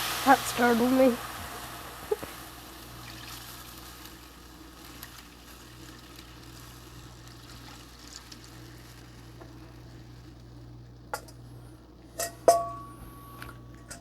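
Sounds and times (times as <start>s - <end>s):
gravy sizzling in a frying pan: 0.0s - 12.5s
steady low hum: 0.0s - 14.0s.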